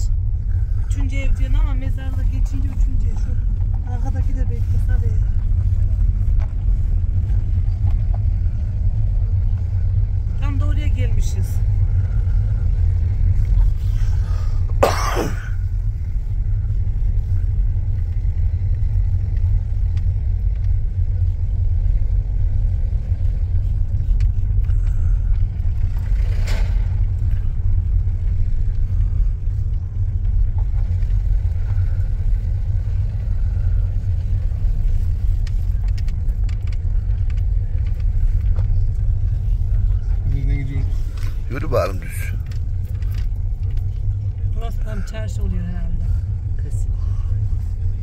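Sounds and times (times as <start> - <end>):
car driving rumble inside cabin: 0.0 - 48.0.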